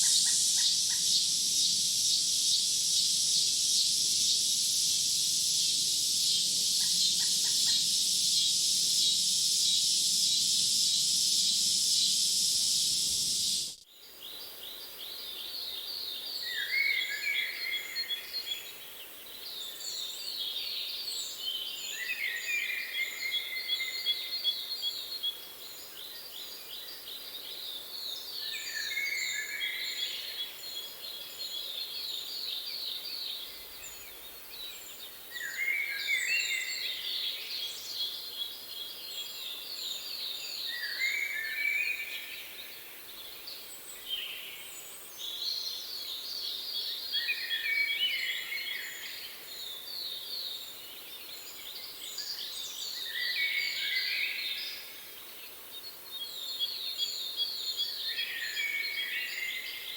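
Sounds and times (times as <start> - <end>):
high-pitched insect chorus: 0.0 - 13.8
songbirds singing: 0.0 - 59.9.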